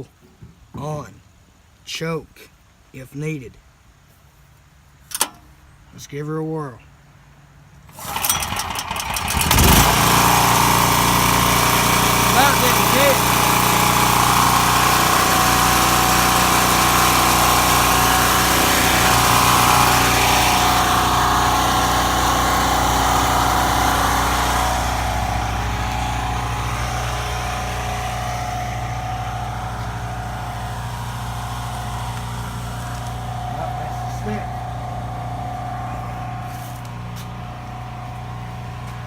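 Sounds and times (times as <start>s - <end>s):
generator engine running: 7.9s - 39.0s.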